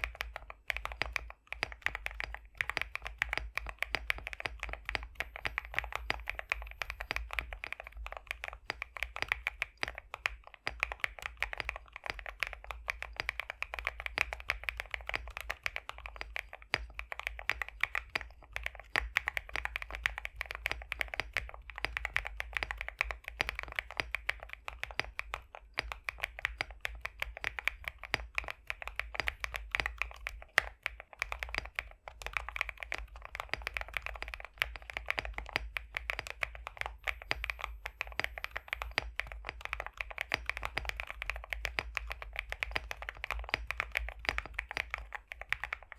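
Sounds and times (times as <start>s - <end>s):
mechanical keyboard typing: 0.0s - 45.9s.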